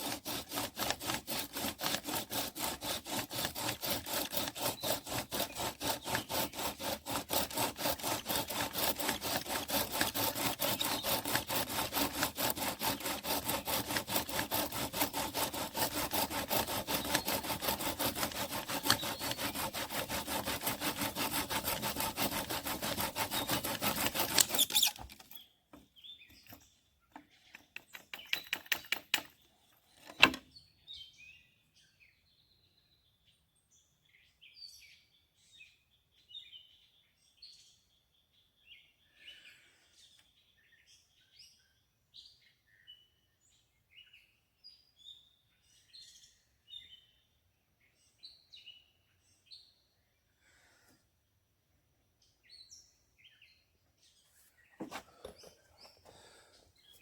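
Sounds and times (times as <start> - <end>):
bow drill rubbing strokes: 0.0 - 25.4
birds chirping: 52.4 - 57.0.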